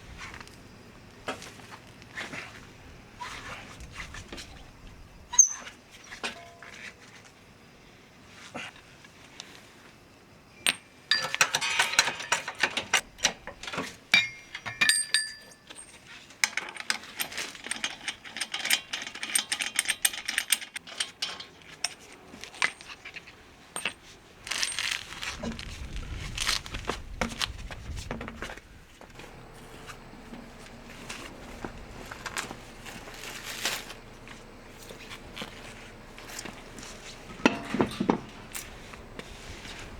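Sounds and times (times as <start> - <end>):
metal tools clinking: 5.4 - 6.8, 10.6 - 25.6, 34.8 - 38.7.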